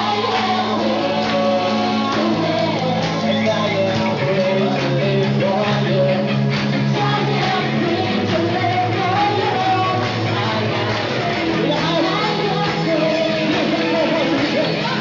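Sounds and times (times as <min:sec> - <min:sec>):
band playing upbeat rock: 0:00.0 - 0:15.0
people singing: 0:00.0 - 0:15.0.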